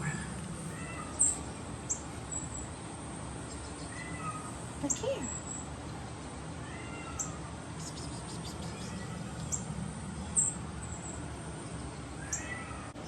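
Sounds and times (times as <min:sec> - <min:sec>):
steady low hum: 0:00.0 - 0:13.0
kittens squeaking: 0:12.2 - 0:12.8.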